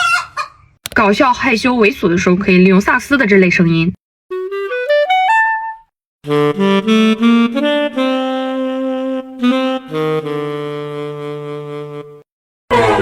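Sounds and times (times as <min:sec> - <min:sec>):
comedic saxophone notes: 0:06.3 - 0:12.2.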